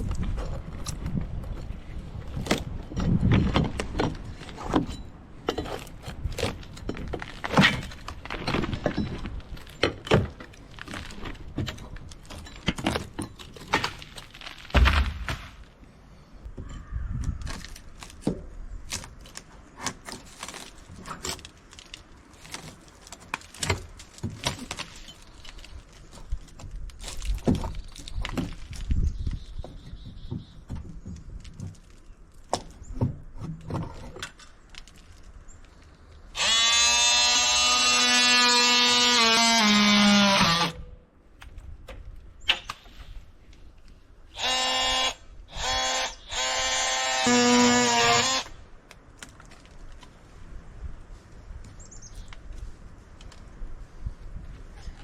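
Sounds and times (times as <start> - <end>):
wood cracking: 0.0 - 15.9, 17.2 - 40.8, 41.4 - 50.2
hand tools prying wood: 0.2 - 15.5, 17.2 - 35.1, 36.4 - 40.9, 44.4 - 48.6
heavy thunk: 14.7 - 15.6.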